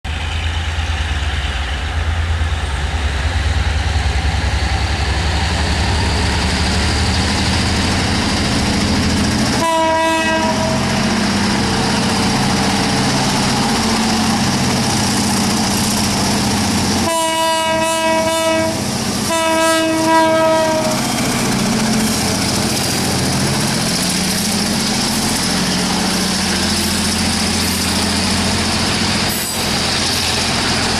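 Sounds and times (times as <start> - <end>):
diesel locomotive engine rumble: 0.0 - 30.9
locomotive air horn blasts: 9.5 - 11.1, 17.0 - 21.2.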